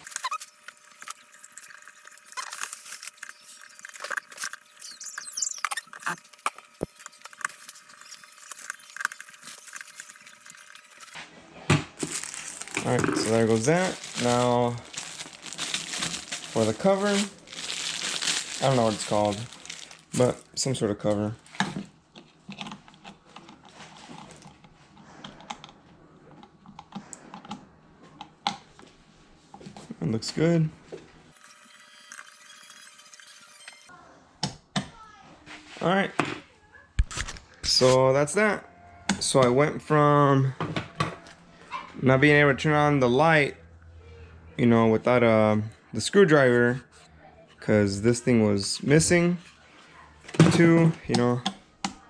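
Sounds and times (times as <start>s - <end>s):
short squeaks: 0.0s - 11.2s, 31.4s - 33.9s.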